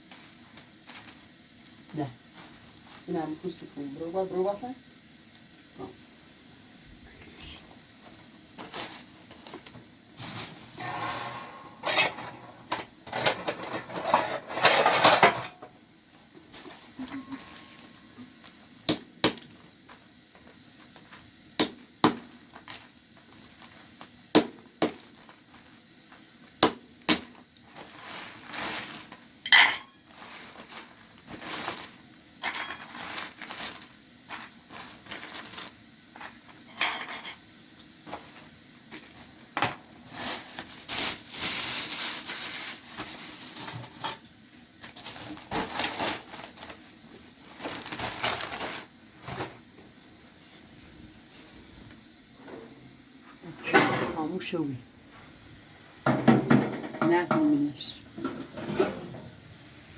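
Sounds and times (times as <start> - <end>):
scraping and rattling: 10.2 - 15.7, 58.2 - 59.4
dishes clinking and knocking: 10.8 - 15.7, 53.6 - 54.2, 56.0 - 57.5, 58.2 - 59.4.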